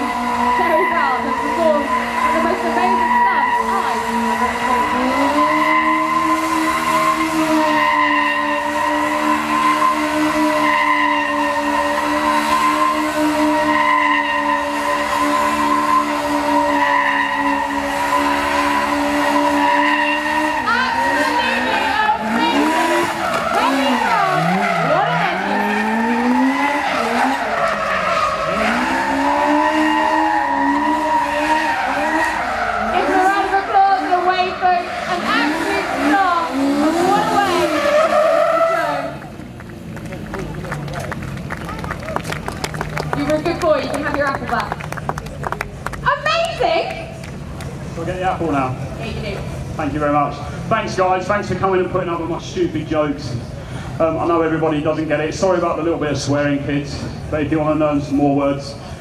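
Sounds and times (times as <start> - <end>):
tyres squealing: 0.0 - 39.5
car engine at high revs: 0.0 - 59.0.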